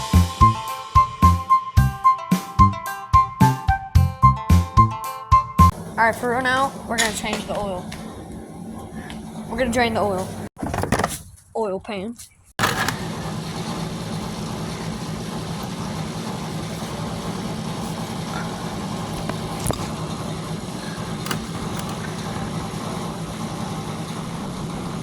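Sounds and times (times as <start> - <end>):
machine hum: 5.7 - 10.5, 12.6 - 25.0.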